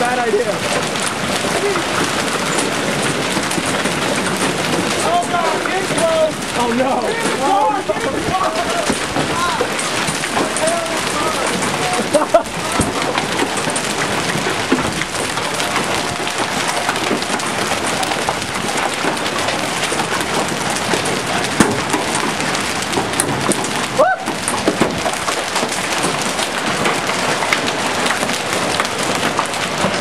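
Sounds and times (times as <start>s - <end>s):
hailstones clattering: 0.0s - 30.0s.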